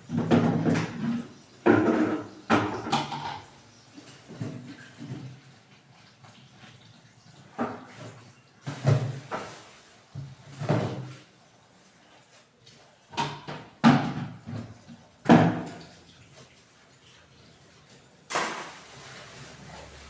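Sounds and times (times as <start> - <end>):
kitchen items clunking: 0.0 - 3.6.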